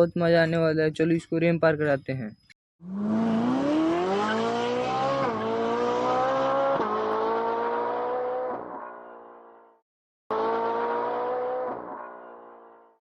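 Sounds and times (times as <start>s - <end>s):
vehicle engine accelerating: 2.8s - 13.0s.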